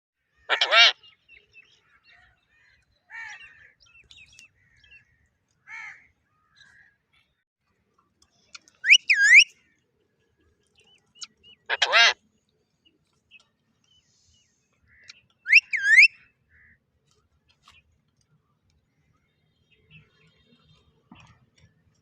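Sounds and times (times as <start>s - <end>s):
parrot squawk: 0.5s - 1.0s, 8.8s - 9.4s, 11.7s - 12.2s, 15.5s - 16.1s
parrot chirps: 8.8s - 9.5s, 15.4s - 16.2s
parrot gliding whistles: 8.8s - 9.6s, 15.4s - 16.2s.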